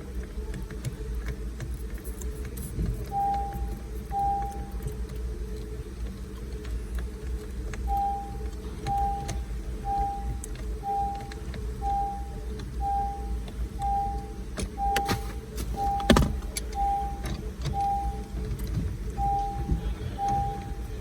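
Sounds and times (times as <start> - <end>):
steady low hum: 0.0 - 21.0
electronic warning chime beeps: 3.1 - 4.9, 7.9 - 18.4, 19.1 - 21.0.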